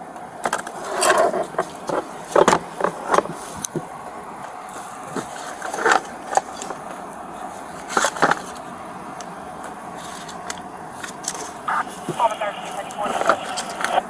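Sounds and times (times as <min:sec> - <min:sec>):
steady background hiss: 0:00.1 - 0:14.0
items knocking and clattering: 0:00.4 - 0:03.8, 0:07.9 - 0:08.5.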